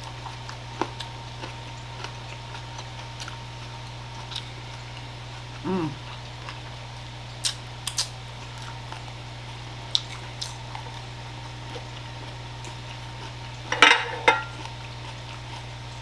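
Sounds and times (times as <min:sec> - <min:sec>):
steady low hum: 0:00.0 - 0:16.0
mouth smacks while chewing: 0:07.4 - 0:09.1, 0:09.9 - 0:11.1.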